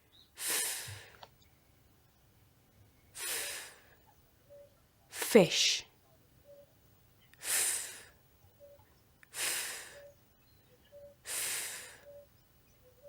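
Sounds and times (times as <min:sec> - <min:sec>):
woman making breathy f hiss: 0:00.4 - 0:01.1, 0:03.2 - 0:03.8, 0:07.4 - 0:08.2, 0:09.3 - 0:10.0, 0:11.3 - 0:12.0.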